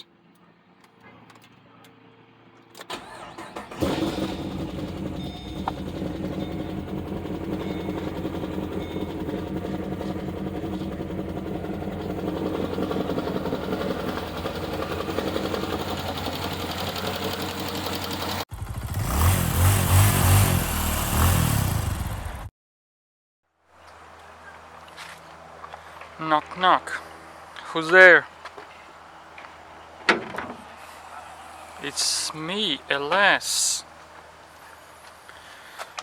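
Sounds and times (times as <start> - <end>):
car engine idling: 2.9 - 22.4
engine ticking knock: 3.9 - 19.4.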